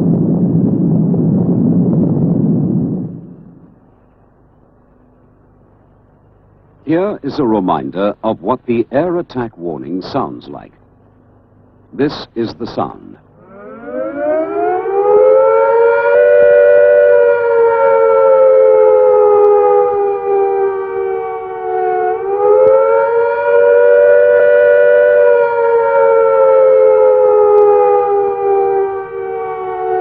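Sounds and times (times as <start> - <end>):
warning siren wailing: 13.4 - 30.0.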